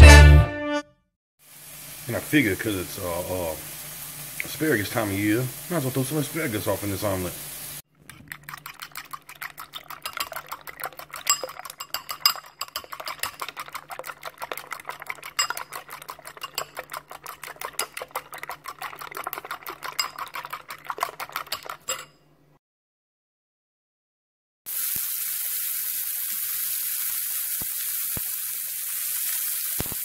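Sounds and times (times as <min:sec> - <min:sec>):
metal utensil clinking on dish: 0:09.9 - 0:13.7, 0:15.2 - 0:18.2, 0:19.6 - 0:22.2.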